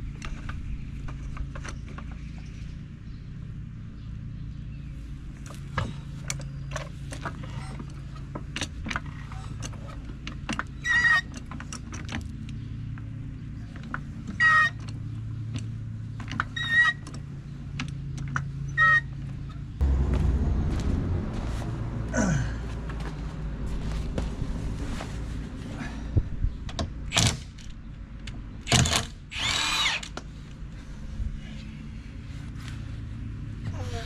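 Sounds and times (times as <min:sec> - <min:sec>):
steady low hum: 0:00.0 - 0:34.0
loud low rumble: 0:19.8 - 0:26.6
small power tool whirring: 0:28.7 - 0:30.2.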